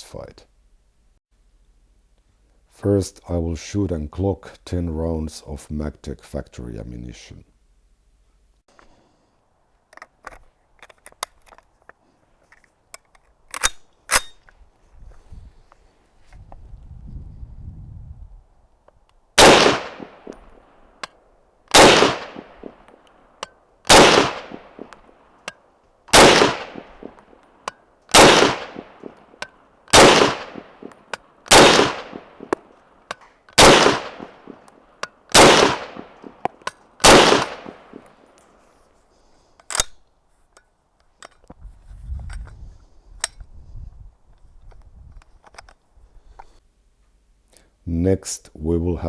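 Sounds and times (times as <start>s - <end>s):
rifle shots: 19.4s - 20.6s, 21.7s - 22.9s, 23.9s - 25.0s, 26.1s - 27.2s, 28.1s - 32.7s, 33.6s - 34.7s, 35.3s - 38.1s.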